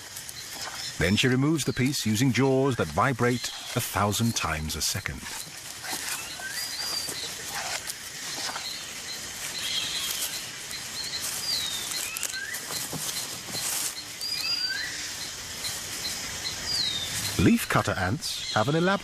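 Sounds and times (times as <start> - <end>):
birds whistling: 0.0 - 19.0
crackling rustles: 0.0 - 19.0
insects hissing: 0.0 - 19.0.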